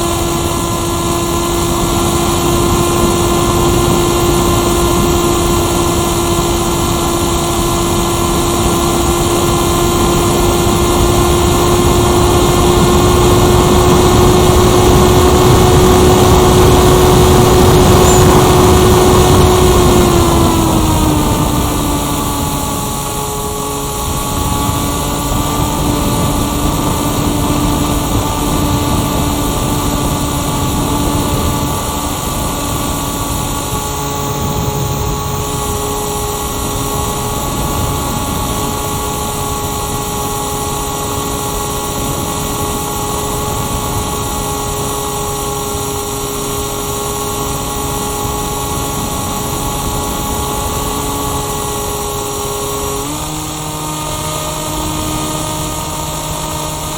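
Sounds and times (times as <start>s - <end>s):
glider motor and propeller whine: 0.0s - 56.9s
air rushing past: 14.7s - 38.5s.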